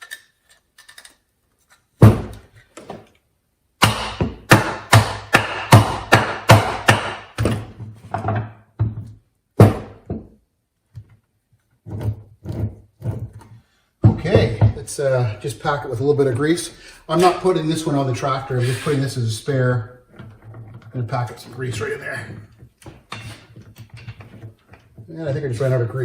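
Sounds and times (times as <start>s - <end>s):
hammer knocking on metal parts: 3.8s - 10.3s, 14.0s - 14.9s.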